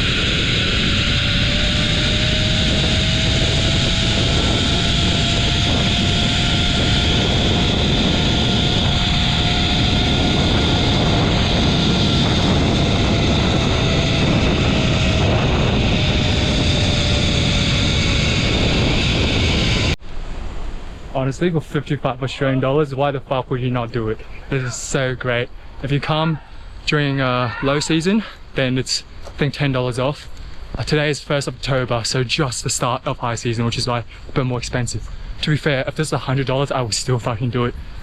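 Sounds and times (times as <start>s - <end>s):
zipline pulleys whirring on cable: 0.0s - 20.0s
wind rushing: 0.0s - 22.2s.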